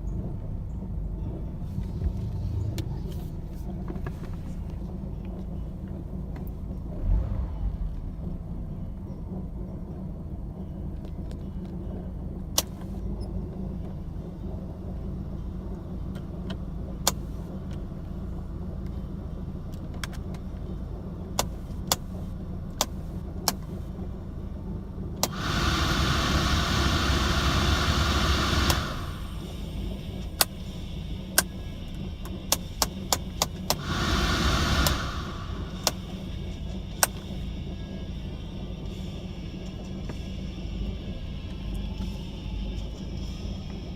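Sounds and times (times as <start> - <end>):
car engine idling roughly: 0.0 - 43.9
loud rushing noise: 25.2 - 29.9, 33.8 - 36.4.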